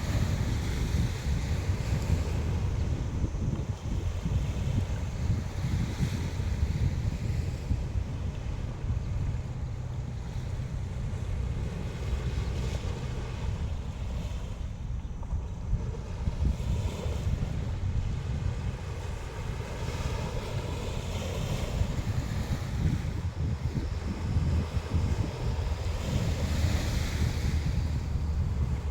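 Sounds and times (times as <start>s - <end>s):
wind buffeting microphone: 0.0s - 28.9s
waves washing on shore: 15.6s - 28.9s.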